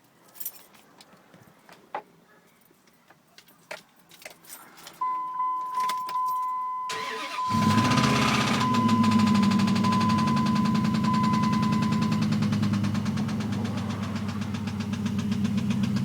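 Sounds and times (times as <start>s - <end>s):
keys jingling: 0.2s - 1.0s, 3.4s - 6.7s
steady high beep: 5.0s - 7.9s, 8.6s - 12.3s
engine clattering: 6.9s - 16.0s
engine cranking and starting: 6.9s - 16.0s.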